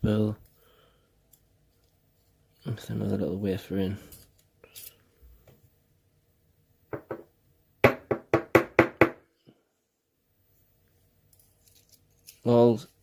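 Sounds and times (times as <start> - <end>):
lock parts knocking on hard surface: 6.9 - 9.2.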